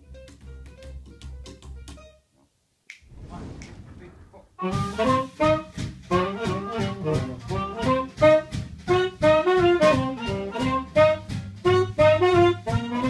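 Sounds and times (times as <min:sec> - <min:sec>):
swing jazz band playing: 0:04.6 - 0:13.0.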